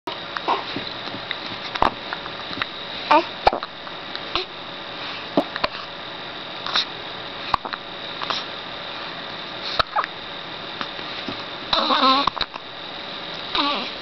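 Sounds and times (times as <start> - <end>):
baby voice squeaks: 11.8 - 12.3, 13.6 - 13.9
baby hiccuping: 11.8 - 12.4.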